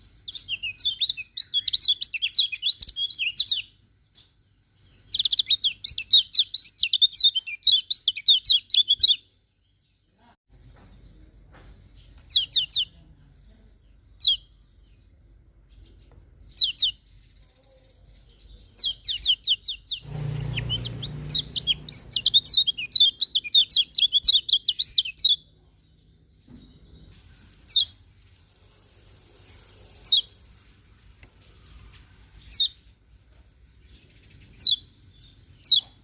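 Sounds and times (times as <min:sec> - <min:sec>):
bird singing high notes: 0:18.9 - 0:25.4.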